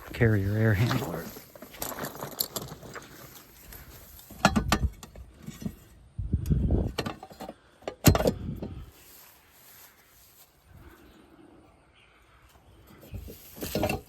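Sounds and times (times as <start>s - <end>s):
metal clicks and knocks: 4.3s - 5.8s, 6.9s - 8.7s.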